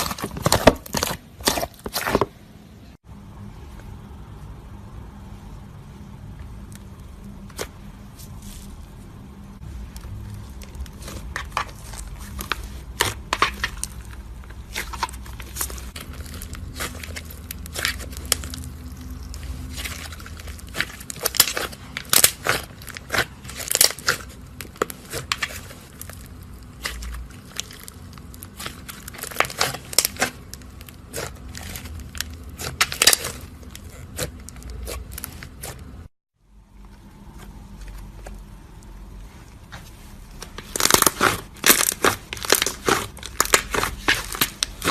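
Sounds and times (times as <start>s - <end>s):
steady low hum: 0.0s - 44.9s
slime crackling and popping: 9.8s - 36.1s, 40.4s - 44.9s.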